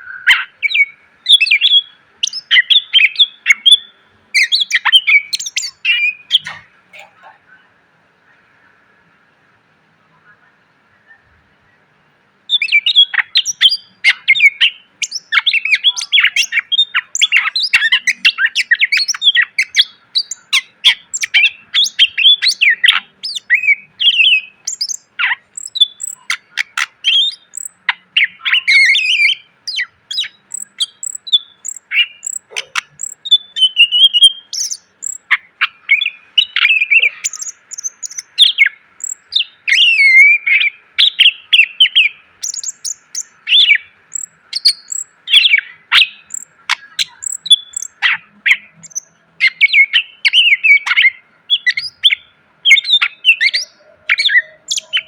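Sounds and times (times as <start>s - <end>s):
bird singing chirps and trills: 0.0s - 7.3s, 12.5s - 55.0s.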